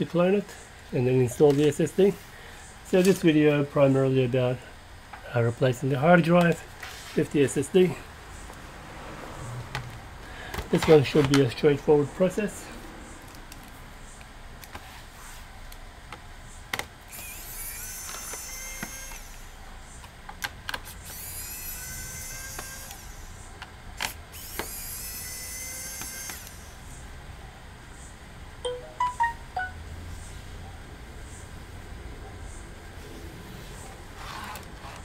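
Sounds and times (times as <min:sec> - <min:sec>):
electric screwdriver whirring: 0:17.1 - 0:19.5, 0:20.8 - 0:23.2, 0:24.0 - 0:26.7.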